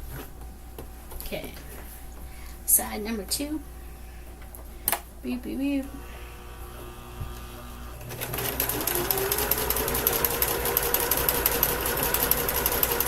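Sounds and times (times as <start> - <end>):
sewing machine stitching: 8.0 - 13.0.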